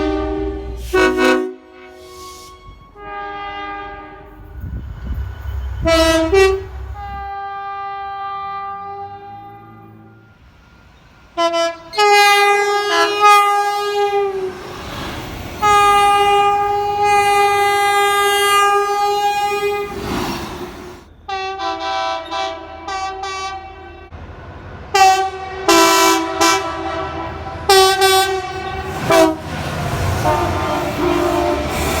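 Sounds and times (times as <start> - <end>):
multi-note train horn chord: 0.0 - 4.4, 5.8 - 10.4, 11.4 - 14.3, 21.3 - 24.1, 25.0 - 29.5, 30.2 - 32.0
train air horn blast: 0.0 - 4.5, 5.8 - 10.4, 11.4 - 14.5, 15.6 - 20.1, 21.3 - 24.1, 24.9 - 32.0
train rumble: 0.0 - 32.0.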